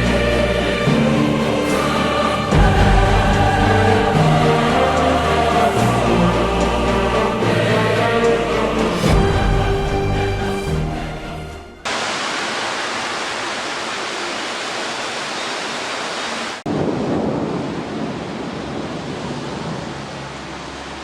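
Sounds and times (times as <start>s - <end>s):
heavy rain hissing: 0.0s - 10.4s, 11.8s - 17.4s
music: 0.0s - 11.9s.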